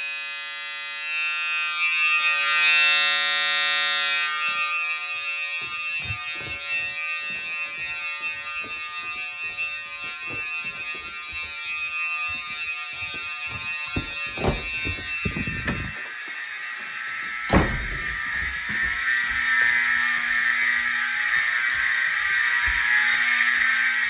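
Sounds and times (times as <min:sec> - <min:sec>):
fire alarm buzzy tone: 0:00.0 - 0:24.0
low thumps: 0:14.0 - 0:16.0, 0:17.5 - 0:19.5.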